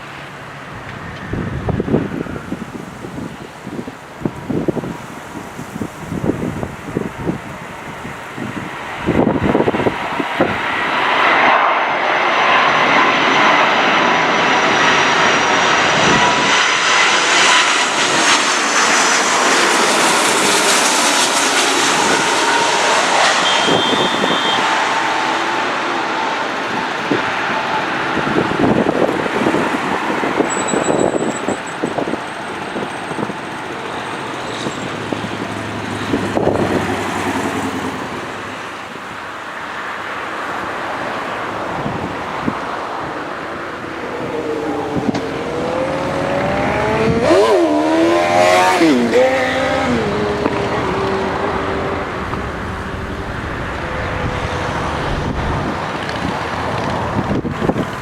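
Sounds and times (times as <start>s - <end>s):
jet engine noise: 0.0s - 58.0s
steady whining tones: 12.8s - 39.5s, 49.8s - 58.0s.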